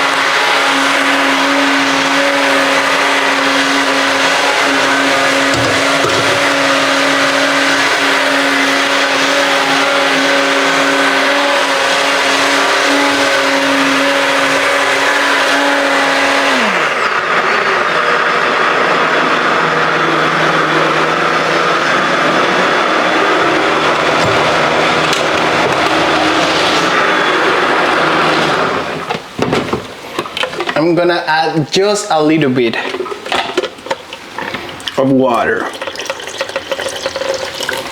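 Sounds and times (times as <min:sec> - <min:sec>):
electric blender running: 0:00.0 - 0:29.2.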